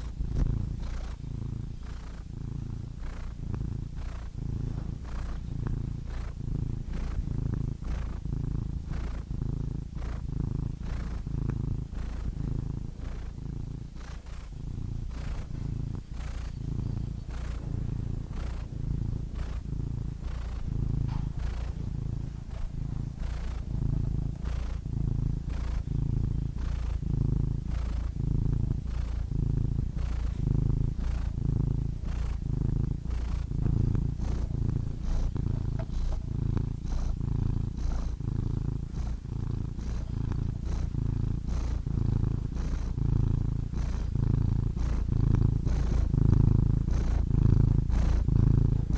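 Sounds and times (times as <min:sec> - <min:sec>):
cat purring: 0:00.0 - 0:48.9.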